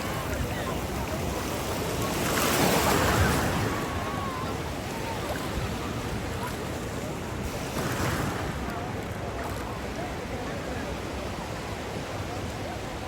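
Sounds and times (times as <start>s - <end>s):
sea waves breaking and washing in: 0.0s - 13.0s.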